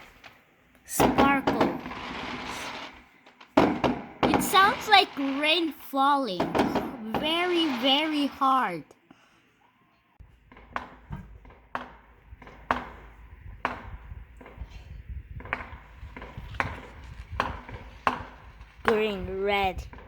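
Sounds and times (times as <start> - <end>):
fireworks bangs: 0.0 - 8.9, 15.3 - 20.0.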